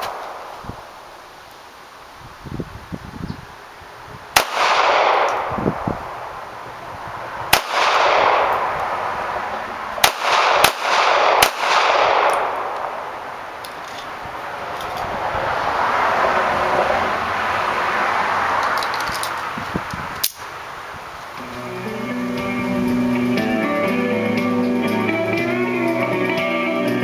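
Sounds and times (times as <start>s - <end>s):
pistol shots with echo: 4.3s - 6.4s, 7.5s - 9.0s, 10.0s - 13.3s.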